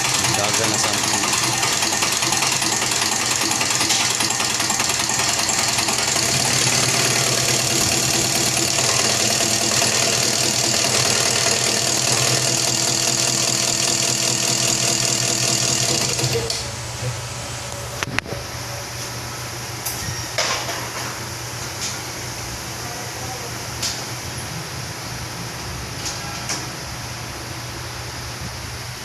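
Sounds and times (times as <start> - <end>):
diesel engine idling with knock: 0.0 - 17.2.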